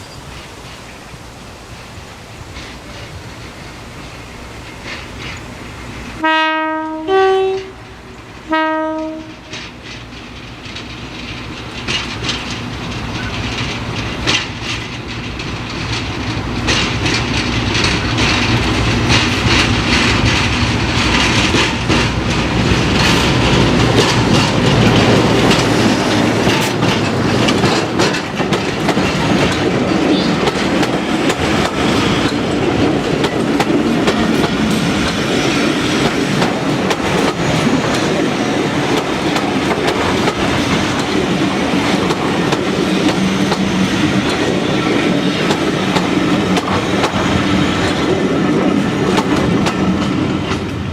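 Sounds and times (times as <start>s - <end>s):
diesel locomotive engine: 0.0s - 50.9s
wheels clicking over rail joints: 2.4s - 6.2s, 7.6s - 50.9s
two-tone locomotive horn: 6.2s - 9.6s.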